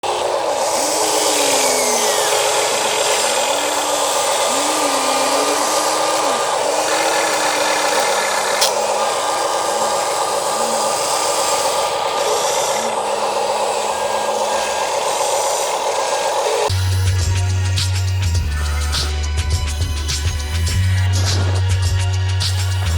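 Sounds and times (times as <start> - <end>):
electric motors whirring: 0.0 - 22.9
sharp click: 8.6 - 8.9.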